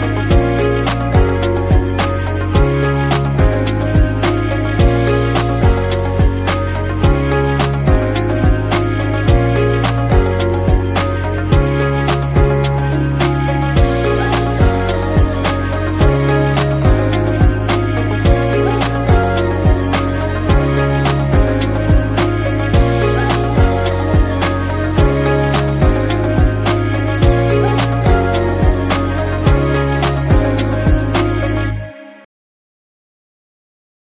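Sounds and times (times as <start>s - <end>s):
held bass notes: 0.0s - 31.9s
slow soul music with drums: 0.3s - 31.4s
deep kick drums: 3.4s - 4.2s, 5.6s - 6.4s, 14.6s - 15.4s, 19.1s - 19.9s, 21.4s - 22.1s, 25.8s - 26.6s, 28.1s - 28.8s, 30.3s - 31.0s.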